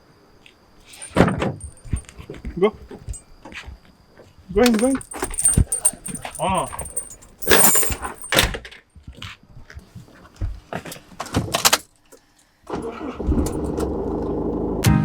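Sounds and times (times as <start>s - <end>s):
keys jangling: 0.8s - 2.1s, 4.6s - 8.5s, 13.4s - 13.9s
car engine starting and running: 12.7s - 14.8s.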